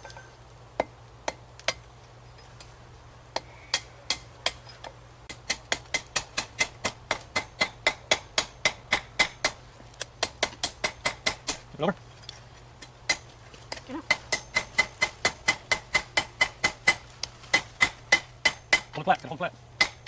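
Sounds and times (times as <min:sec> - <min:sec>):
hammer striking metal rivet: 0:03.4 - 0:09.6, 0:10.2 - 0:11.6, 0:12.2 - 0:19.0, 0:19.8 - 0:20.0.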